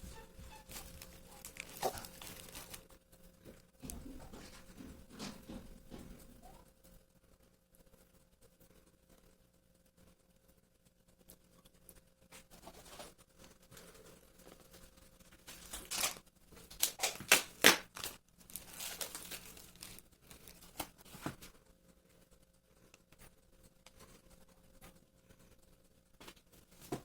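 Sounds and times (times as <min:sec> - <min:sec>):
plastic packaging crinkling and tearing: 0:00.5 - 0:03.0, 0:15.3 - 0:21.5.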